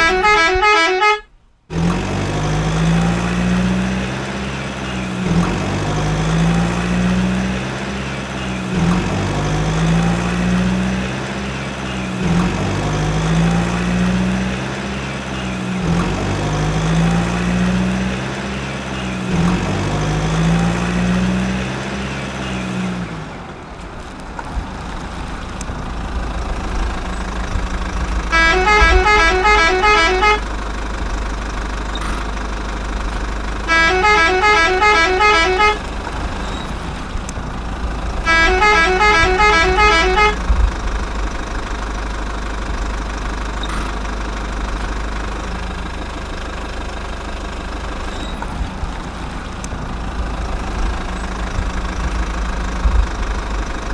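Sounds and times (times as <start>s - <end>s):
truck horn melody: 0.0s - 2.0s, 28.2s - 30.8s, 33.6s - 36.6s, 38.1s - 40.7s
low engine rumble: 0.0s - 53.9s.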